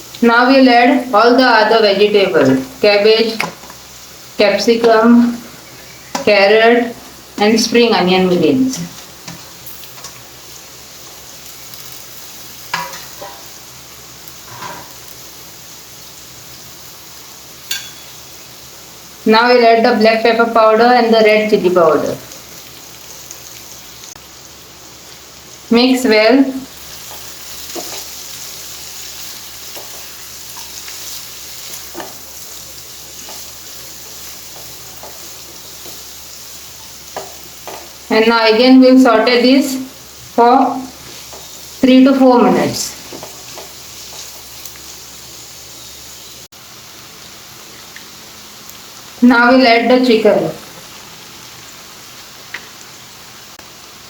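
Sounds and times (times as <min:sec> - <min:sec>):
vegetables sizzling in hot oil: 0:00.0 - 0:54.0
spoon scraping pan: 0:12.7 - 0:13.6, 0:26.9 - 0:32.3.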